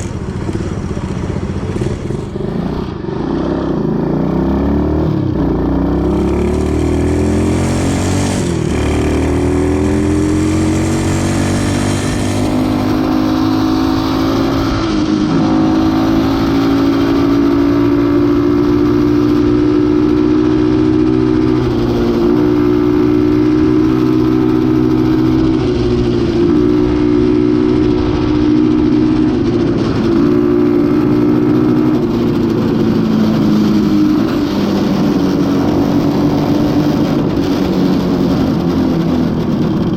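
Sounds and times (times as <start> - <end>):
small motorbike engine accelerating: 0.0 - 39.9.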